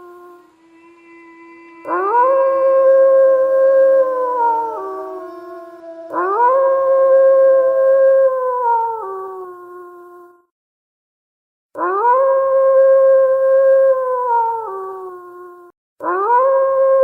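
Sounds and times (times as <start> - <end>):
wolves howling: 0.0 - 9.5.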